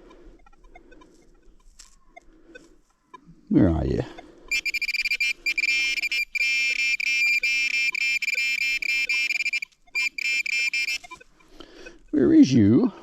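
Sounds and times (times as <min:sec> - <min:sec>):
metal detector stuttering buzz: 0:04.5 - 0:11.1.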